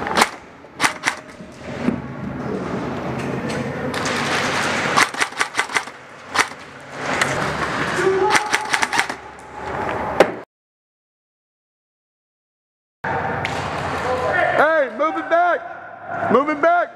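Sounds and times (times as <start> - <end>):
airsoft guns firing: 0.0 - 1.4, 4.0 - 6.7, 8.2 - 9.2.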